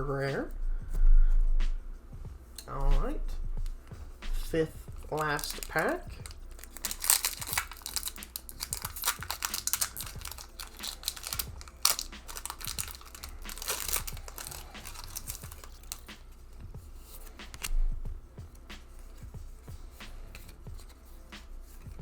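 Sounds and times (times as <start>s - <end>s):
foil wrapper tearing and crinkling: 5.0s - 16.3s, 17.2s - 17.8s.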